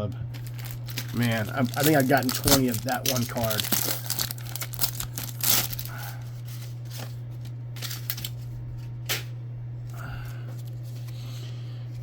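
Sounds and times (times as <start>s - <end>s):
low electrical hum: 0.0s - 12.0s
wrapper crinkling and tearing: 0.3s - 7.2s, 7.8s - 8.4s
cards being handled: 0.3s - 9.3s.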